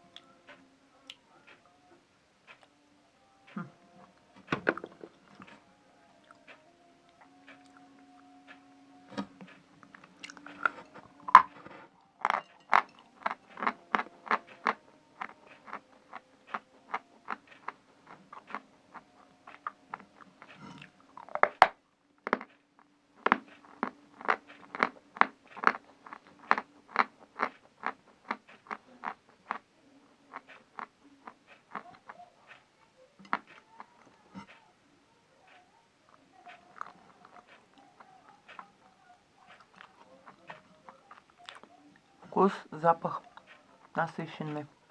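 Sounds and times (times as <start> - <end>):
chalk crunching being chewed: 9.8 - 22.6, 23.2 - 34.6, 35.5 - 38.9, 39.5 - 41.7.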